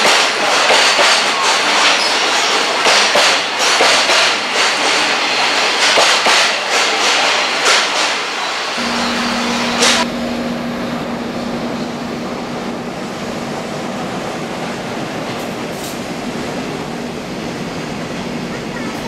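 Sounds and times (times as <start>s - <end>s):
sharp rail clack: 0.0s - 10.2s, 15.2s - 16.2s
train wheels rushing on rail: 0.0s - 19.0s
steady hum: 8.8s - 13.4s.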